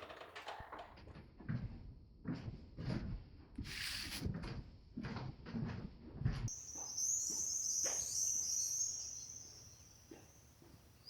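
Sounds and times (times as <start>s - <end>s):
songbird warbling: 6.6s - 10.3s.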